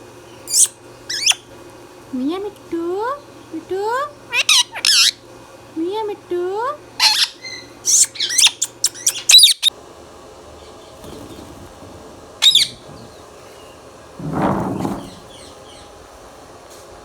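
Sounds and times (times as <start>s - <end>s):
rustling: 10.9s - 16.2s.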